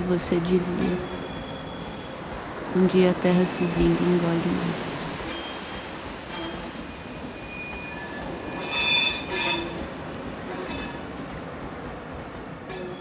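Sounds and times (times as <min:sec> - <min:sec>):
train rumble: 0:00.0 - 0:13.0
metallic wheel squeal: 0:05.2 - 0:11.2.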